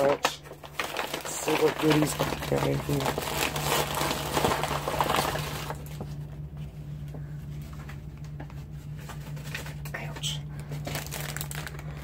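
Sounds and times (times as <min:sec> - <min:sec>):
plastic packaging crinkling: 0:00.0 - 0:06.2, 0:08.9 - 0:12.0
low electrical hum: 0:00.0 - 0:12.0.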